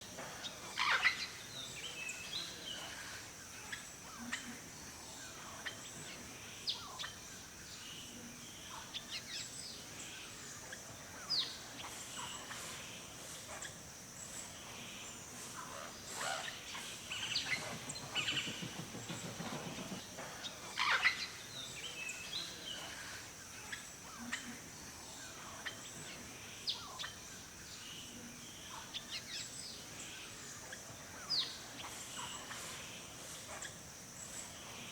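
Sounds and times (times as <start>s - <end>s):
steady high hiss: 0.0s - 34.9s
birds chirping: 9.8s - 24.2s.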